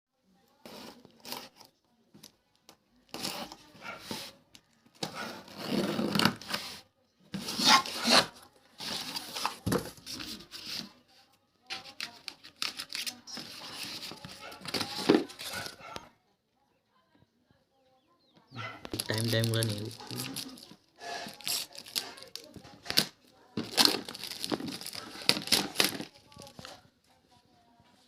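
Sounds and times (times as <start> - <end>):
packaging rubbing and scraping: 0.6 - 1.7, 3.1 - 11.1, 11.7 - 16.0, 18.9 - 26.9.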